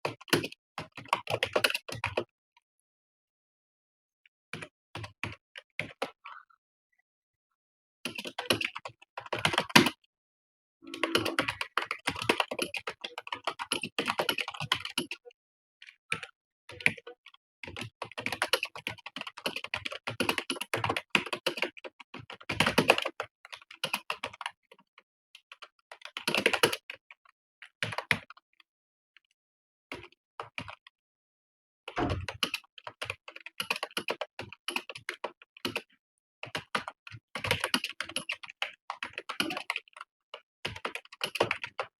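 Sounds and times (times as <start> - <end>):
fast typing on keyboard: 0.0 - 2.3, 8.0 - 10.0, 10.9 - 15.3, 16.1 - 24.6, 25.5 - 27.0, 30.0 - 30.8, 32.3 - 41.9.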